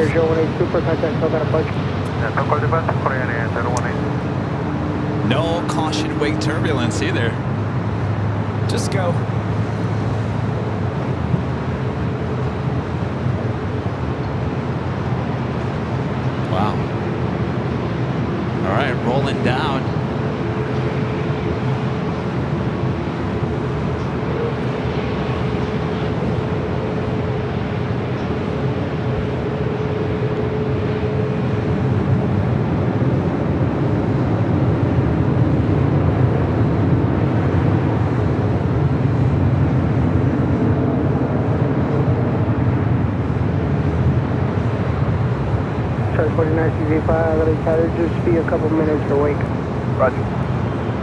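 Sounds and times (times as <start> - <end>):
jet engines roaring: 0.0 - 51.0
faint steady hum: 44.6 - 51.0.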